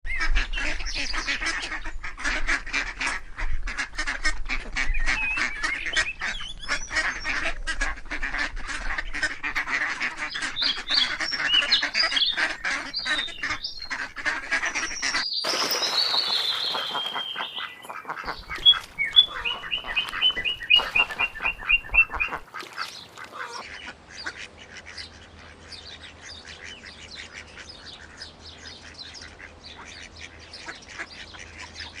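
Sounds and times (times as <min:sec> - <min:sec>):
ducks quacking: 0:00.1 - 0:32.0
run of evenly spaced calls: 0:09.2 - 0:32.0
high squeaky calls: 0:10.0 - 0:23.6.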